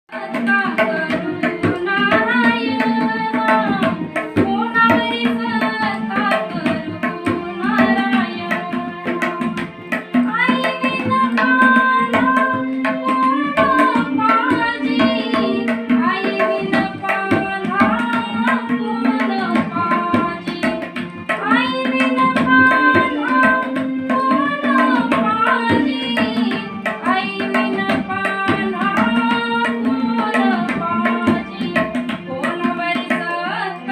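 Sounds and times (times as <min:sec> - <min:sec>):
person singing: 0:00.1 - 0:09.5, 0:21.4 - 0:33.9
tabla playing a rhythm: 0:00.1 - 0:33.9.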